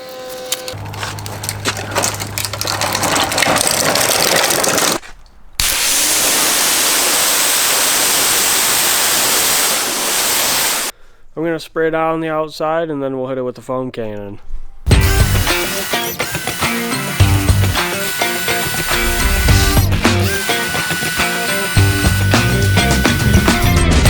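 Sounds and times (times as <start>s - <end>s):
clattering and clicks: 0.7s - 5.4s
pressure washer motor humming: 5.6s - 10.9s, 14.9s - 24.0s
water spraying under pressure: 5.6s - 10.9s, 14.9s - 24.0s.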